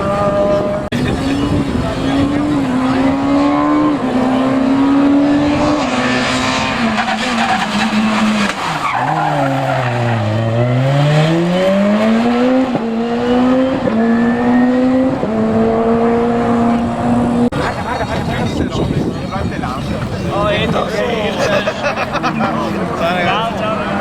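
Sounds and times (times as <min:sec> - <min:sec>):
rally car engine revving: 0:00.0 - 0:24.0
tyres squealing and skidding: 0:00.9 - 0:11.0.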